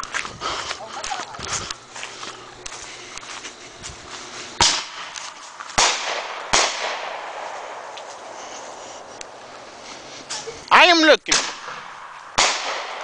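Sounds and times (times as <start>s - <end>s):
fireworks bangs with echo: 4.6s - 8.3s, 11.3s - 13.0s.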